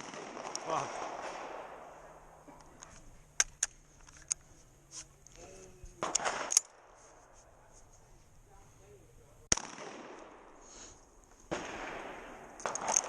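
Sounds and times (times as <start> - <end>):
shotgun metallic clicks: 2.5 - 4.4, 6.0 - 6.8, 12.4 - 13.0.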